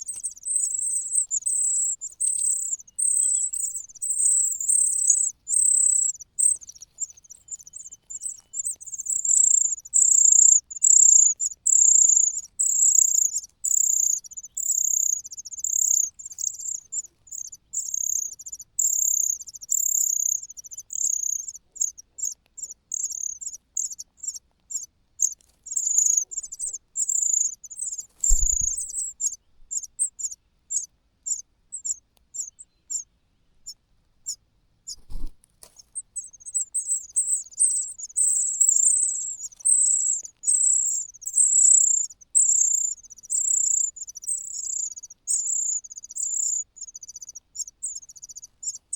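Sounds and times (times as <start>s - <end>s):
bird chick begging calls: 0.0s - 33.0s, 36.2s - 48.8s.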